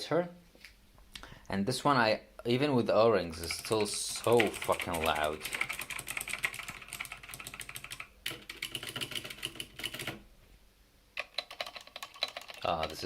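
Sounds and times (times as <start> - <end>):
mechanical keyboard typing: 3.4 - 10.2, 11.2 - 13.0.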